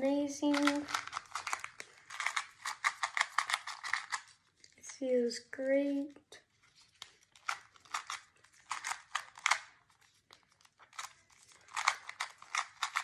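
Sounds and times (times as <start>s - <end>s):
puzzle cube clicking turns: 0.4s - 4.5s, 6.9s - 13.0s.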